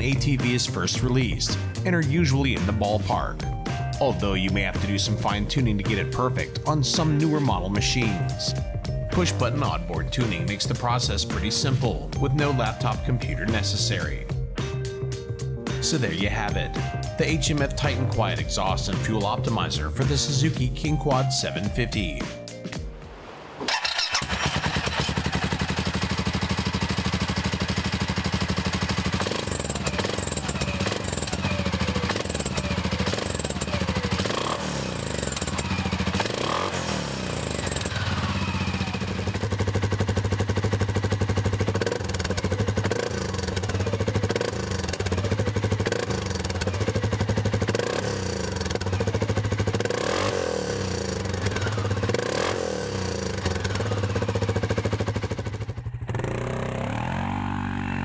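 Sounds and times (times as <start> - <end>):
atv engine idling and revving: 0.0 - 22.5, 23.7 - 58.0.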